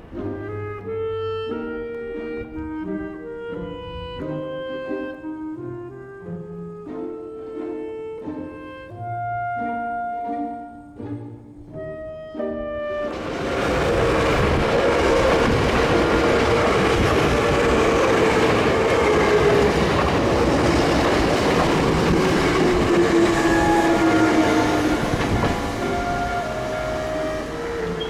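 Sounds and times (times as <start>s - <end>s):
electric train passing: 12.6s - 28.0s
train wheel clatter: 13.0s - 28.0s.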